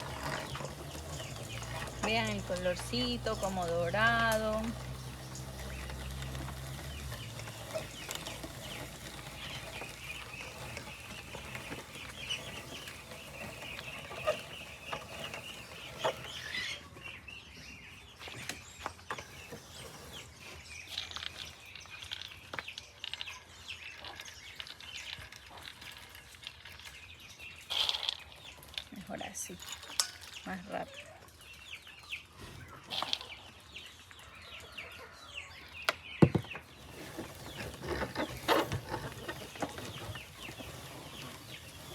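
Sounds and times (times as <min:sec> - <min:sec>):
chickens clucking: 0:00.0 - 0:17.2, 0:30.0 - 0:41.9.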